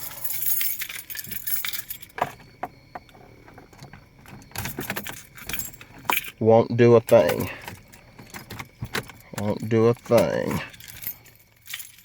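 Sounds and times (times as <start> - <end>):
keys jangling on key ring: 0.0 - 2.2, 9.1 - 12.0.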